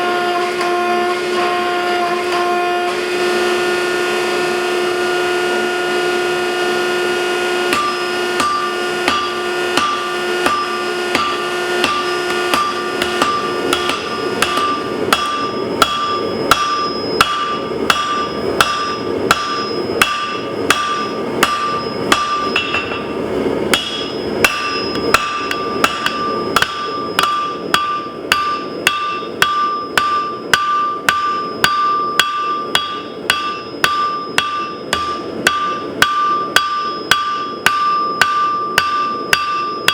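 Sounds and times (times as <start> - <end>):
steady machine hum: 0.0 - 39.9
hammer striking steel on anvil: 7.7 - 39.9.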